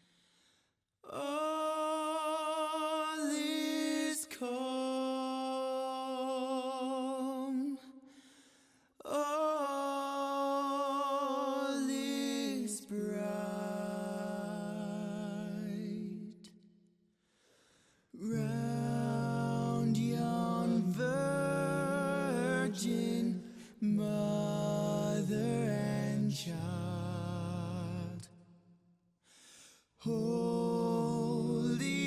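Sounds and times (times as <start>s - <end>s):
person singing with vibrato: 1.1s - 7.8s, 18.2s - 28.3s, 30.0s - 32.0s.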